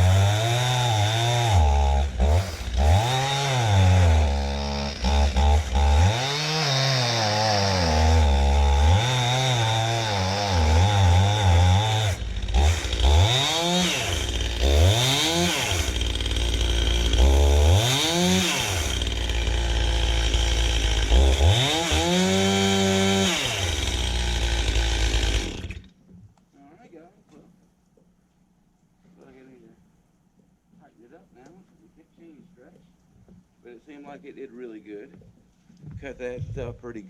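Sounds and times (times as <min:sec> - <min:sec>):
chainsaw cutting wood: 0:00.0 - 0:26.0.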